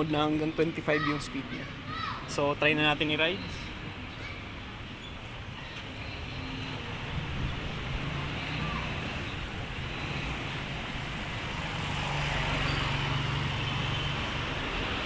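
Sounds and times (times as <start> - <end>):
vehicle hum: 5.3 - 15.0.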